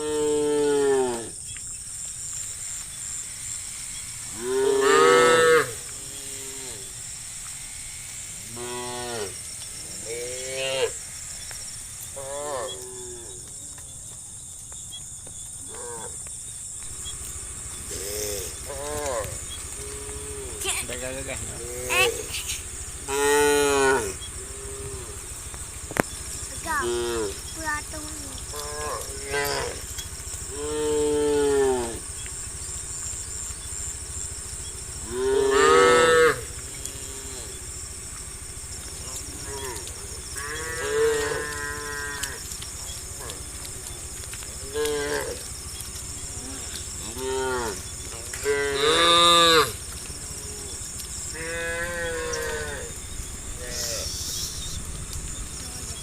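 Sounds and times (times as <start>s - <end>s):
cows mooing: 0.0s - 1.4s, 4.3s - 7.0s, 8.4s - 11.0s, 12.2s - 13.5s, 17.7s - 25.5s, 26.5s - 27.5s, 28.5s - 32.1s, 35.0s - 37.6s, 39.1s - 49.8s, 50.4s - 54.2s
crickets chirring: 0.0s - 56.0s
high whine of insects: 0.0s - 56.0s.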